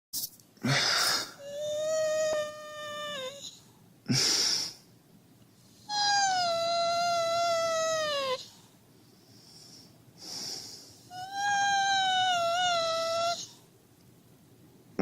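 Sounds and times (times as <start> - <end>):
dog whining: 1.4 - 3.6, 5.8 - 8.5, 11.1 - 13.6.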